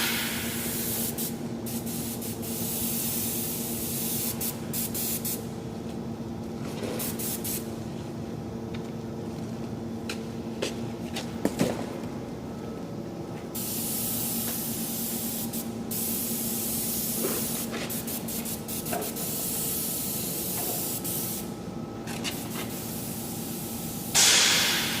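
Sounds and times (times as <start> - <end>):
paint spray gun hissing: 0.0 - 5.4, 13.6 - 21.5, 24.1 - 25.0
steady low hum: 0.0 - 25.0.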